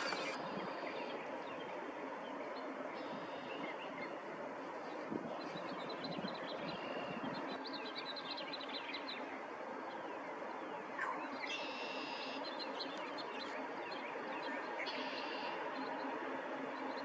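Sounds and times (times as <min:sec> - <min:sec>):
small birds chirping: 0:00.0 - 0:00.4.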